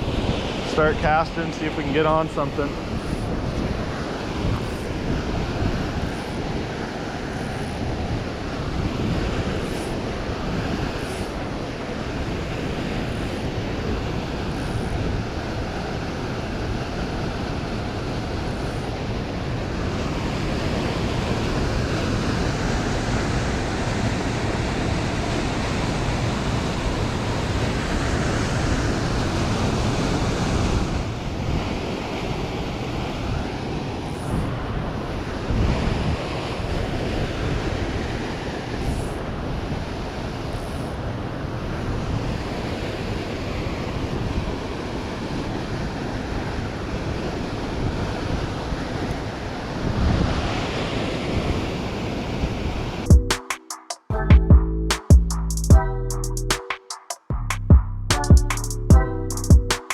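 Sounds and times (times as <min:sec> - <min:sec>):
waterfall and creek rushing: 0:00.0 - 0:33.0.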